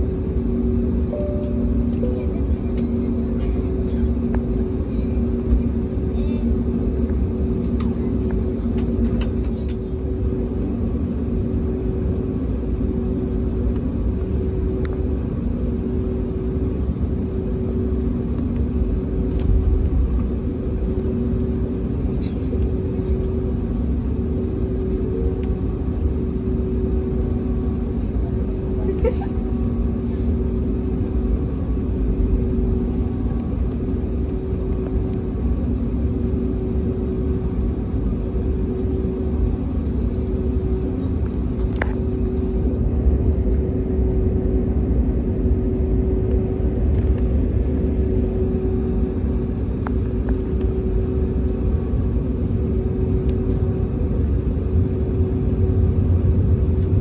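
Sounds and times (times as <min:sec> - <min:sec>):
aircraft cabin engine rumble: 0:00.0 - 0:57.0
two-tone hum: 0:01.0 - 0:03.1.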